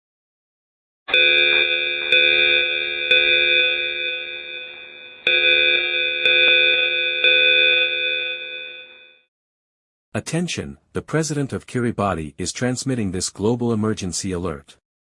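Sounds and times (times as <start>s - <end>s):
bell-like multi-tone chime: 1.1s - 9.3s.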